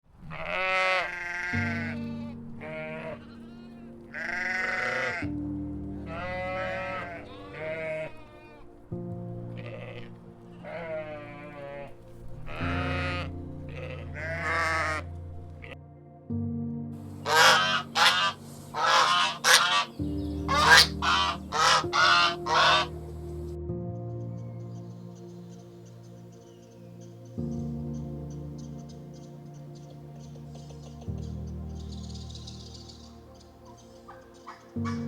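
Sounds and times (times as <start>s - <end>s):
background music low chords: 0.1s - 35.0s
sheep bleating: 0.2s - 5.4s, 6.1s - 8.8s, 9.6s - 15.0s, 17.3s - 19.9s, 20.5s - 22.9s.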